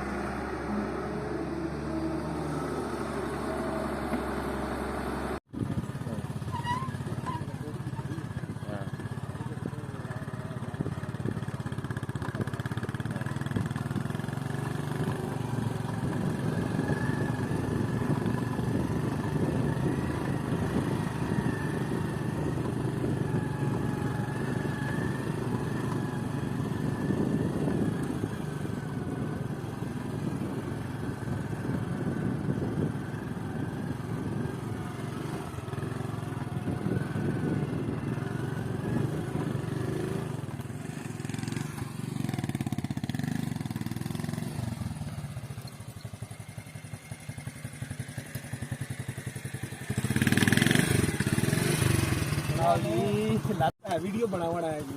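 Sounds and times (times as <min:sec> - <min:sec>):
diesel engine running: 0:00.0 - 0:05.4.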